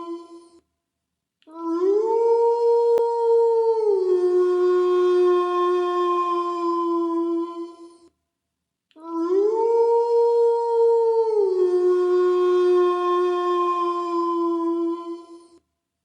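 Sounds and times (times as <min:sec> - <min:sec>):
wolf howling: 0:09.3 - 0:15.4.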